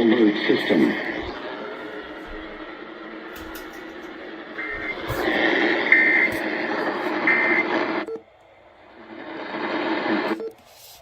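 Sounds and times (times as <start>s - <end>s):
radio static hiss: 0.0s - 8.1s, 8.9s - 11.0s
data tone bursts: 4.5s - 6.5s, 7.2s - 8.2s.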